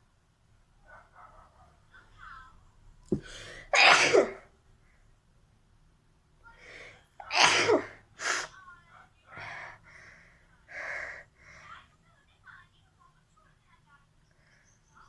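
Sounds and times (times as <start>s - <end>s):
breathy catches: 3.1s - 3.8s
woman sneezing: 3.2s - 4.4s, 7.3s - 8.6s.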